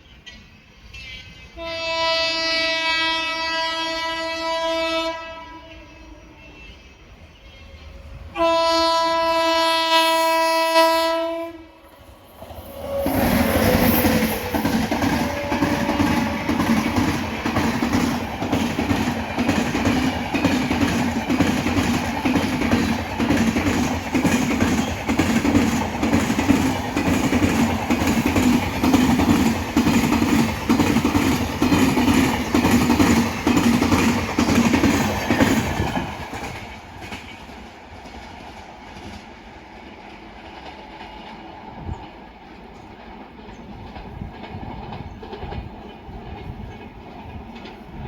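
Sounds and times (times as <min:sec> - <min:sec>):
faint train rumble: 0:00.0 - 0:48.0
train wheels clattering over rails: 0:11.9 - 0:48.0.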